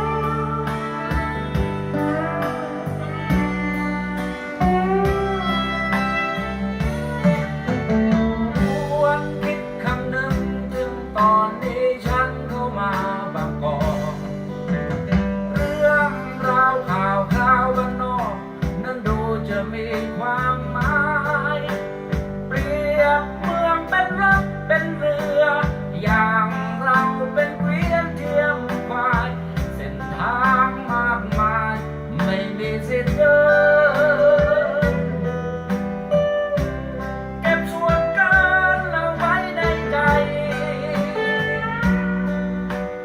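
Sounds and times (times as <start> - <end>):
person singing: 0.0 - 14.4, 15.5 - 43.0
guitar accompaniment: 0.0 - 43.0.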